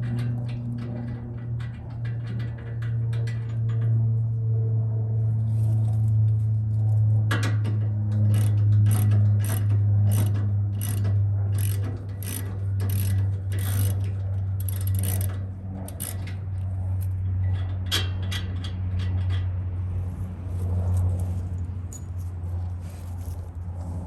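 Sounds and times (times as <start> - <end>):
steady low hum: 0.0 - 24.0
ratchet wrench on a bolt: 7.3 - 19.5.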